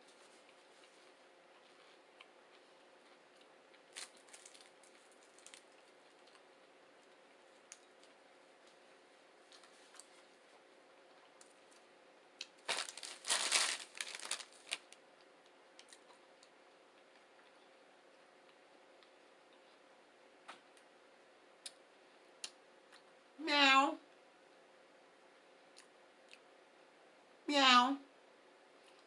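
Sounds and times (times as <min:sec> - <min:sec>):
crinkling and crunching of food: 0:00.0 - 0:19.9.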